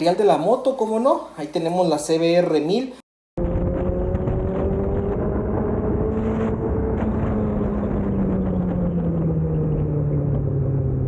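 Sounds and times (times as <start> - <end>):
motorcycle engine running: 3.4 - 10.6.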